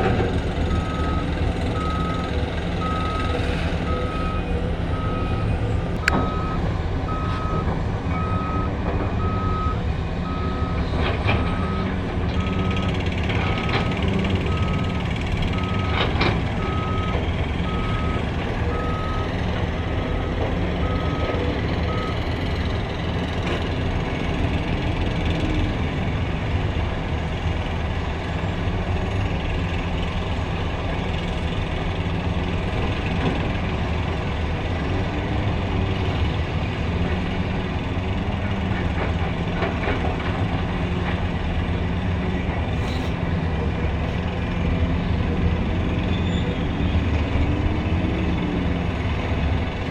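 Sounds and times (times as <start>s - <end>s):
diesel engine running: 0.0s - 49.9s
backup alarm beeping: 3.9s - 10.8s.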